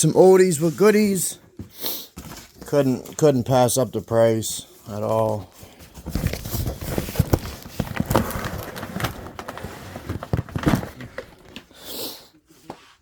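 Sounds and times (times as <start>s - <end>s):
cardboard boxes knocking and rustling: 1.6s - 2.8s, 5.6s - 11.7s.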